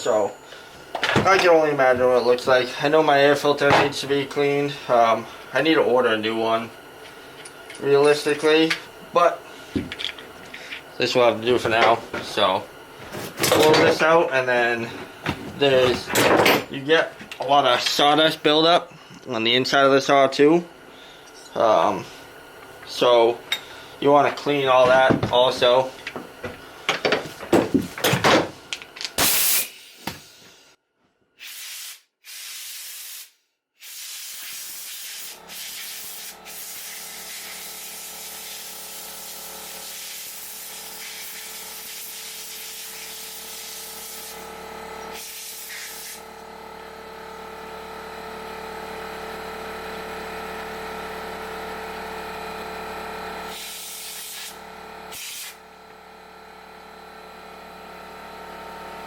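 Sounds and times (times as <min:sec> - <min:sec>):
compressed air blasting: 0:29.2 - 0:30.6, 0:31.4 - 0:44.5, 0:45.1 - 0:46.3, 0:53.5 - 0:55.6.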